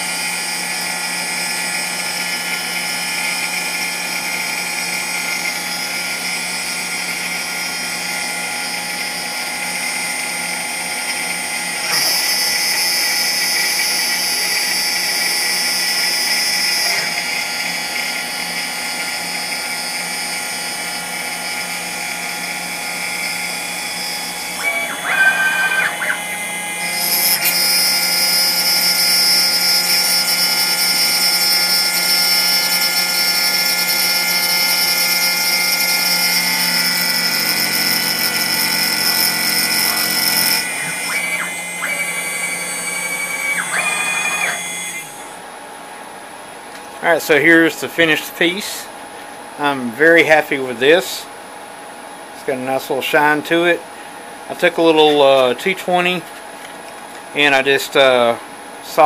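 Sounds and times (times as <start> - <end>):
router spindle whining: 0.0 - 45.6.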